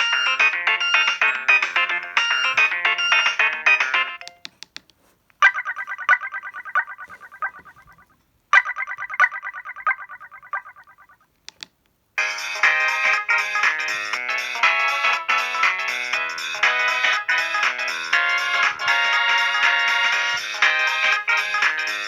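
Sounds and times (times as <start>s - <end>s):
rapid pulsing ringtone trill: 0.0s - 4.2s, 5.4s - 7.9s, 8.6s - 11.2s, 15.9s - 22.0s
polyphonic ringtone melody: 0.0s - 4.4s, 5.4s - 8.0s, 8.6s - 11.2s, 12.2s - 22.0s.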